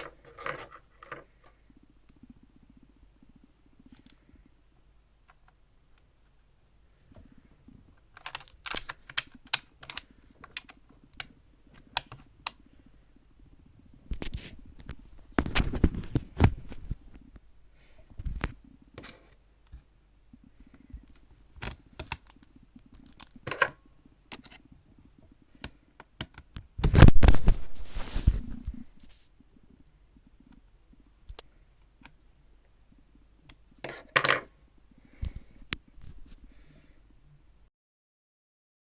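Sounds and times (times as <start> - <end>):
rustling and scraping: 0.0 - 1.6, 26.8 - 29.4
hands clicking on computer hardware: 3.9 - 4.2, 8.1 - 12.6, 21.0 - 23.7, 24.3 - 24.7, 25.6 - 27.0.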